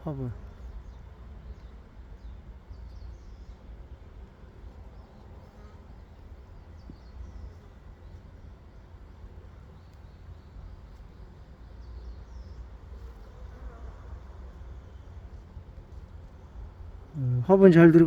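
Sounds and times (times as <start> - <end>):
birds chirping: 0.0 - 3.7, 6.5 - 13.0, 16.2 - 18.0.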